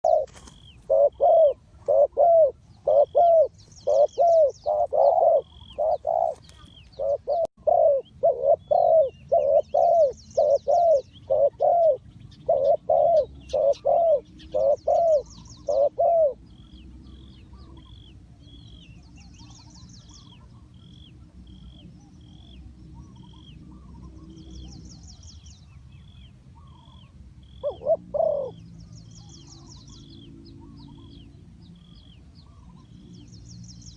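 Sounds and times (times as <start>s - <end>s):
dove cooing: 0.0s - 18.1s, 26.6s - 31.2s
high bird trills: 0.0s - 18.1s
small birds chirping: 0.0s - 33.9s.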